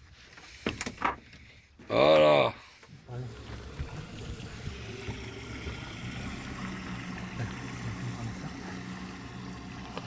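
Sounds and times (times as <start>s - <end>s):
boat engine humming: 2.7s - 10.0s
wind and water hiss: 2.7s - 10.0s.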